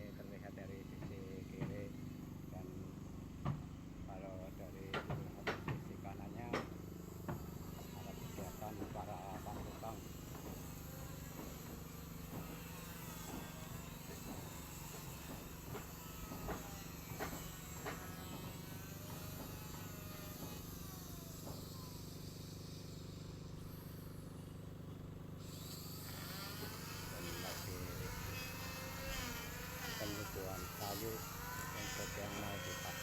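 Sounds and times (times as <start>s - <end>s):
hammer blows on wood: 8.8s - 22.8s.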